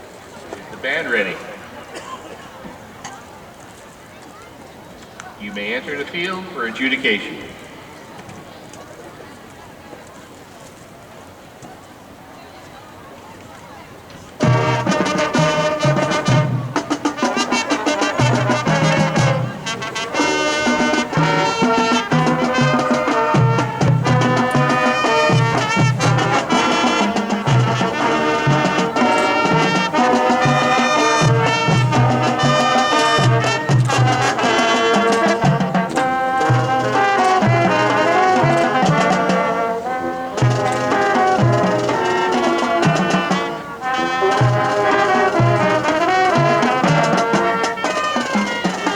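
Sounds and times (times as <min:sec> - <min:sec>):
marching band brass playing: 0:00.0 - 0:03.5, 0:05.3 - 0:08.5, 0:14.2 - 0:48.9
low drum beat: 0:18.1 - 0:39.5.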